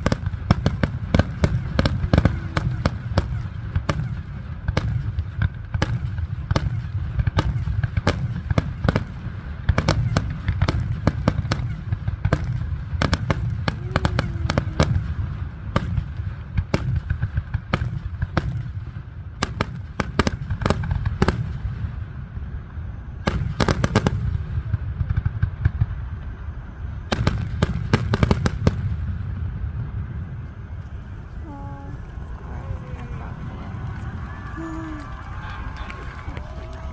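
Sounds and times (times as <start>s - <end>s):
fireworks bangs and crackles: 0.0s - 36.9s
steady low rumble: 0.0s - 36.9s.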